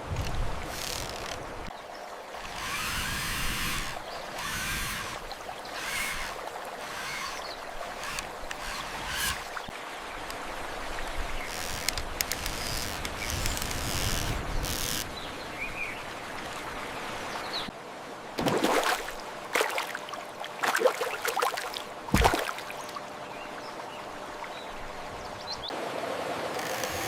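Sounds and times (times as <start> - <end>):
water rushing: 2.1 - 12.4.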